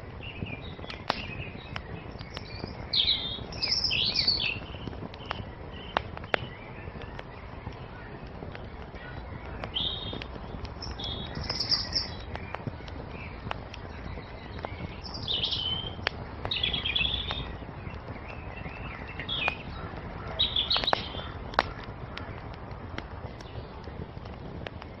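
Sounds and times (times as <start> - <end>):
songbirds chirping: 0.0 - 25.0
steady low rumble: 0.0 - 25.0
wood fire crackling and popping: 0.0 - 25.0.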